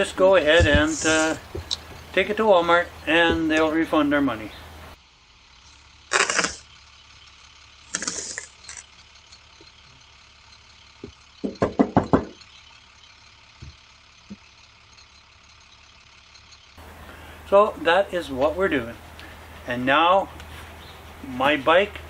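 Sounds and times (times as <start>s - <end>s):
objects scraping or rustling: 0.0s - 2.2s
rattle of knocks: 0.0s - 4.0s, 9.3s - 14.5s.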